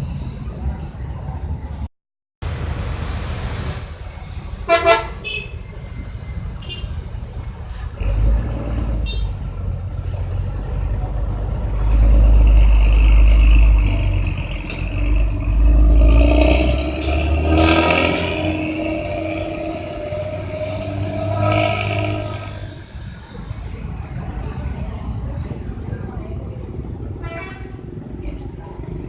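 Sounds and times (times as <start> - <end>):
bus engine revving: 7.4 - 23.9.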